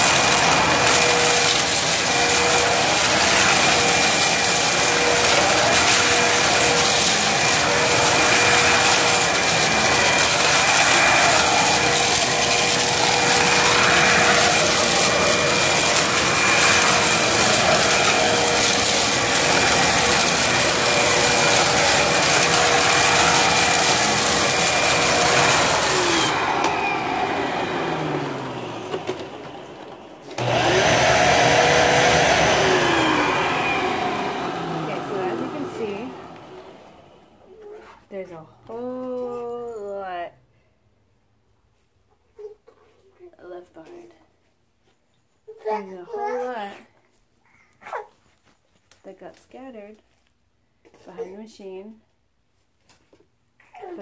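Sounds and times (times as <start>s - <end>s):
vacuum cleaner running: 0.0s - 39.2s.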